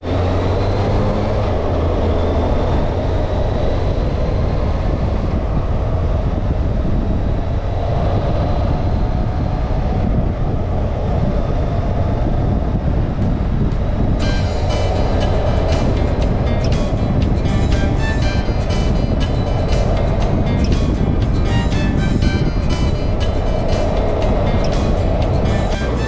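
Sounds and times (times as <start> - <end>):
wind and road noise: 0.0 - 26.0
motorcycle engine running: 13.8 - 26.0.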